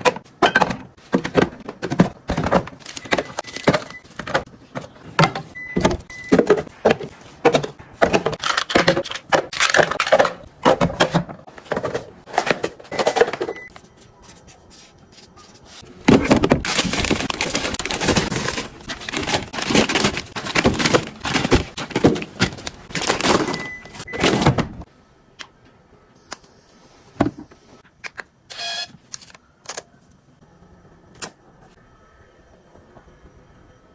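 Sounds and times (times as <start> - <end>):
plastic boxes knocking and clicking: 0.0 - 13.7, 16.0 - 24.8.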